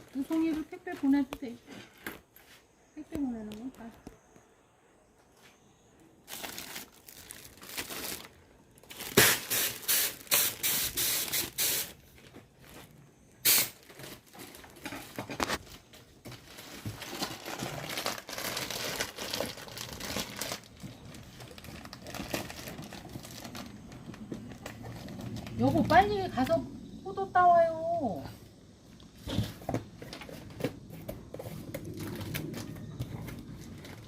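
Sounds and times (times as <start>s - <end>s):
packaging rustling and crinkling: 6.2s - 13.1s, 13.7s - 26.1s, 29.3s - 34.0s.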